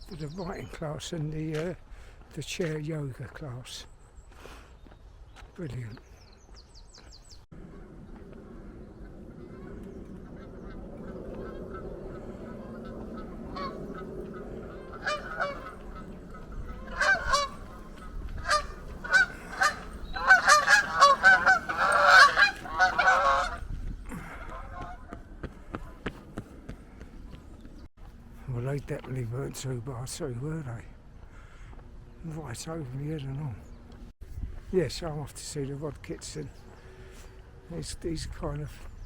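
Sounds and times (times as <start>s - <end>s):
geese honking: 7.6s - 26.0s.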